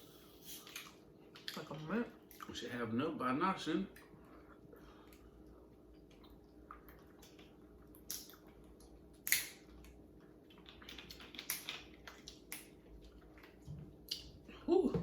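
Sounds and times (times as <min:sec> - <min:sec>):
faint chewing: 0:03.9 - 0:14.5
crab shell cracking: 0:09.2 - 0:10.0, 0:10.6 - 0:12.8.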